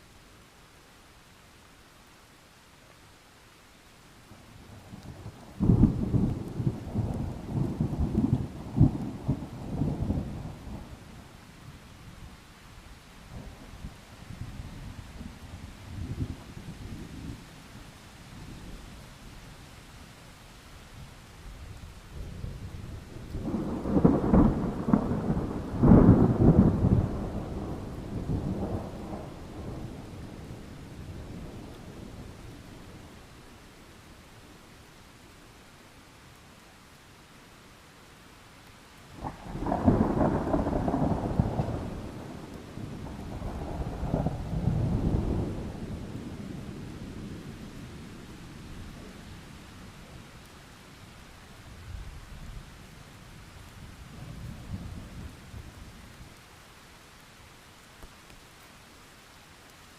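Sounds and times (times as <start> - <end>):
rain hissing: 0.0 - 59.9
thunder clap and rumble: 5.0 - 10.9, 22.2 - 32.5, 39.2 - 48.1.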